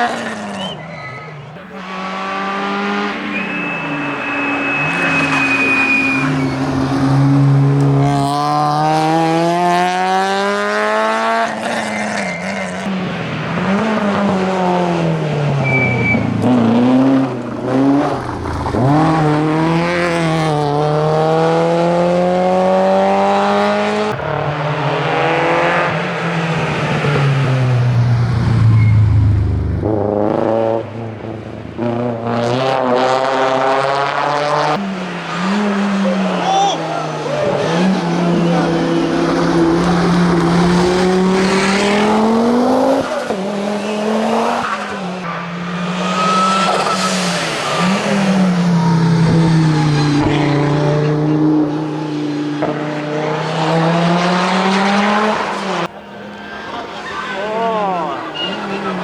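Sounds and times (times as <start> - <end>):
rally car engine revving: 0.0 - 59.0
tyre squeal: 0.4 - 7.3, 15.6 - 16.4, 28.6 - 29.2, 43.0 - 50.7, 56.2 - 59.0.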